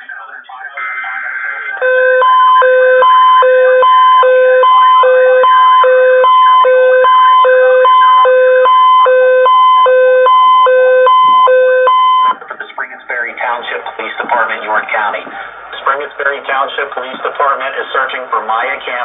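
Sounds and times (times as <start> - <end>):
electronic two-tone alert signal: 0.8 - 12.4.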